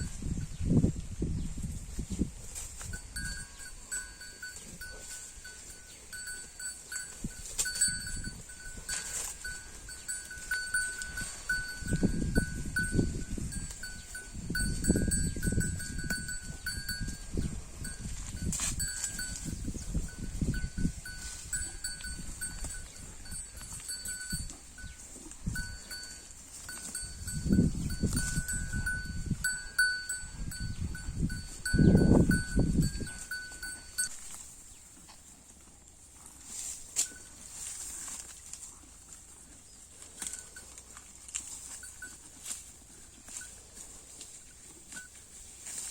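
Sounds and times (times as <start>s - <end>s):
cow chewing grass: 0.0s - 45.9s
high ringing tone: 3.0s - 34.2s.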